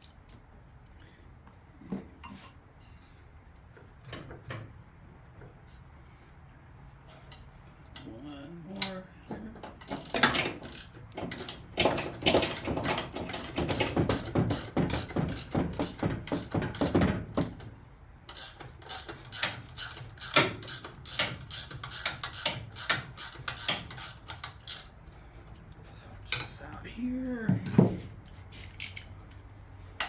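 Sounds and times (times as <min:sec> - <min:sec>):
socket ratchet clicking: 0:18.3 - 0:25.0.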